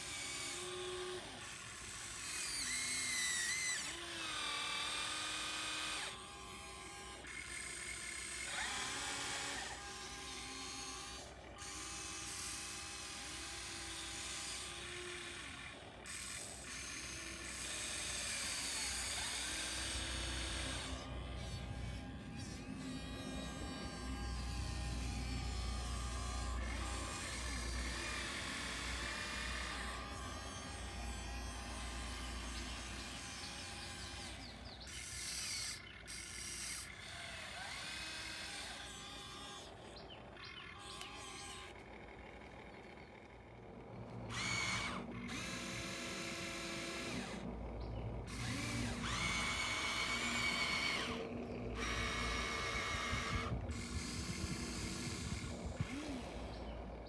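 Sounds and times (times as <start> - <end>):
small electric motors whining: 0.0 - 57.0.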